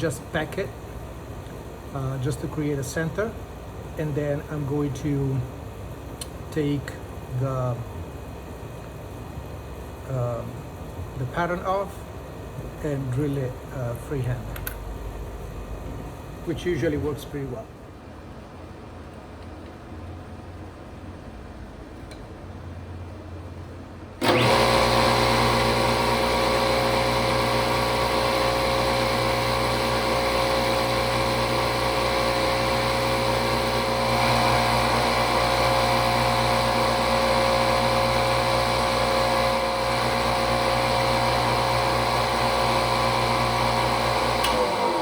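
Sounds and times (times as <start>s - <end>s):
electric drill motor running: 24.2s - 45.0s.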